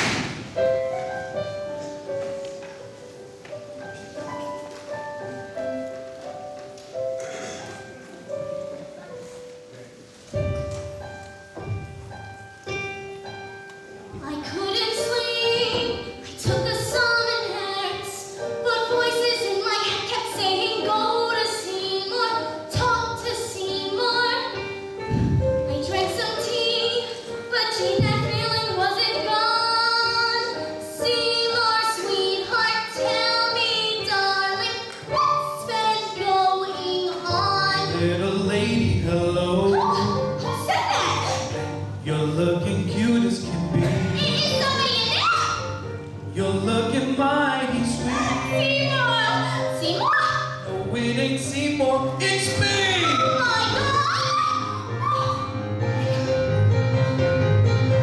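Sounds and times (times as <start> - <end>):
soft piano accompaniment: 0.0 - 58.0
young woman singing: 14.2 - 24.8, 25.6 - 41.5, 46.6 - 55.4.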